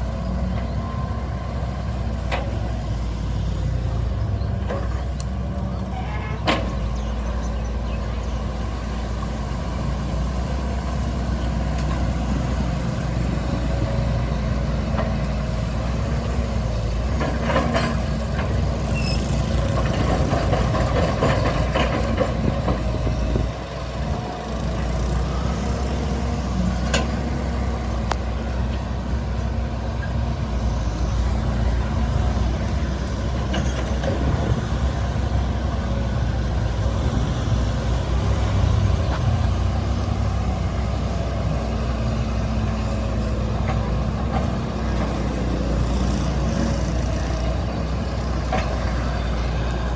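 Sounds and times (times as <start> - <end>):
excavator diesel engine running: 0.0 - 49.9
machine knocks and clatter: 19.6 - 23.1.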